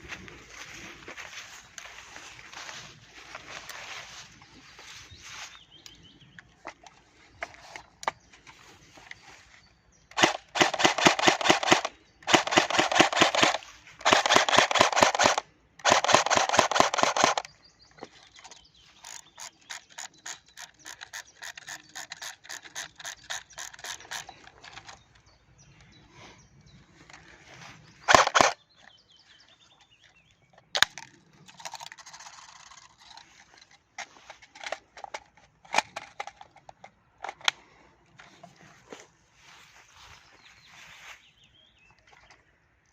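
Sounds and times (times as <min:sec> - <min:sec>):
airsoft gun firing bursts: 0:10.1 - 0:17.5, 0:28.1 - 0:28.6.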